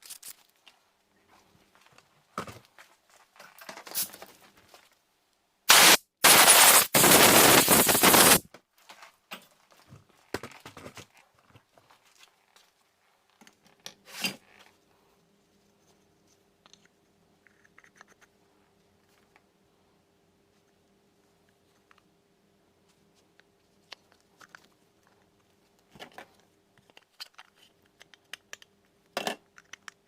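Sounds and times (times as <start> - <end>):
loud hissing bursts: 5.7 - 8.4.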